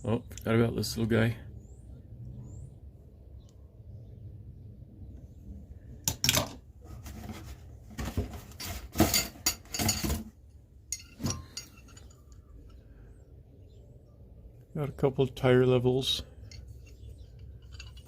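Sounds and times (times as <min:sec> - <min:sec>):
metal hand tools clattering: 0:08.7 - 0:10.3, 0:10.9 - 0:12.5, 0:16.4 - 0:18.0.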